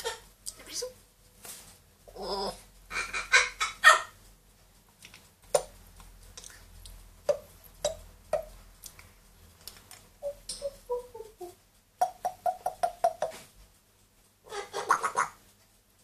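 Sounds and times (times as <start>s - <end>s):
parrot raspy calls: 0.0s - 0.2s, 2.1s - 4.2s, 14.4s - 15.4s.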